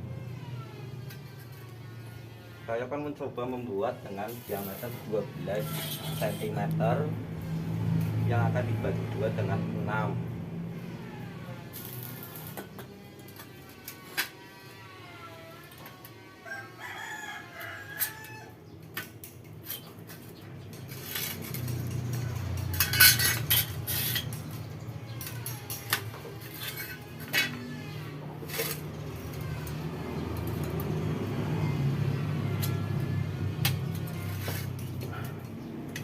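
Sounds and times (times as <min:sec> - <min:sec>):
chickens crowing and clucking: 0:16.3 - 0:18.8.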